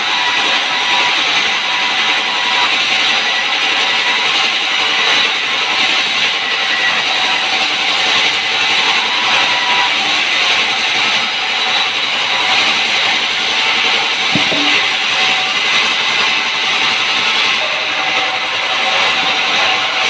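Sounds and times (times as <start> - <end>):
sawmill machinery running: 0.0 - 20.0
brief knock: 14.4 - 14.9.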